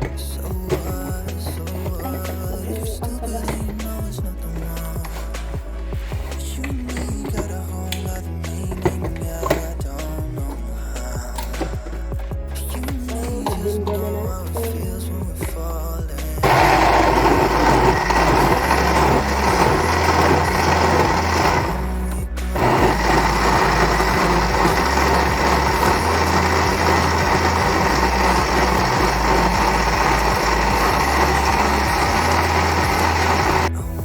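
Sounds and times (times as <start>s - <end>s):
blender motor whirring: 16.4s - 33.7s.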